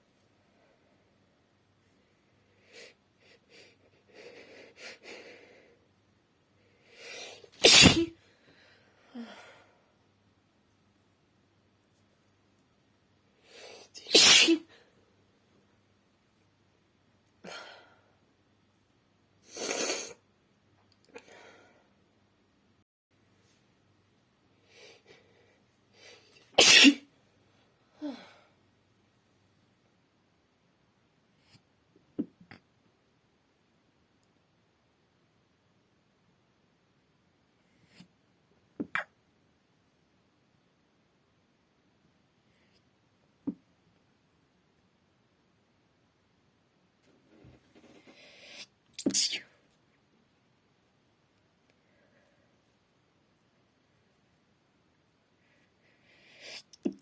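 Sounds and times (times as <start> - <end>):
person sneezing: 7.1 - 8.2, 13.6 - 14.7, 26.6 - 27.1, 48.4 - 49.6
woman sneezing: 7.6 - 8.2, 14.0 - 14.7, 26.6 - 27.0.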